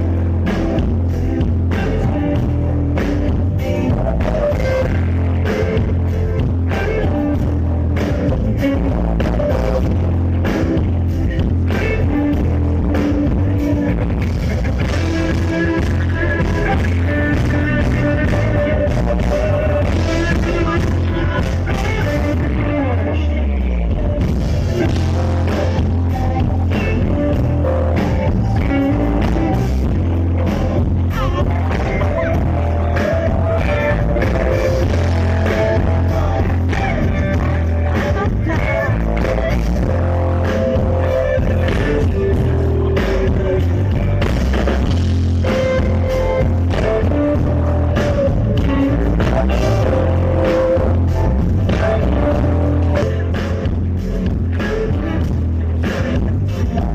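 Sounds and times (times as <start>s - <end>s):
live rock band playing: 0.0s - 56.9s
person singing: 0.0s - 56.9s.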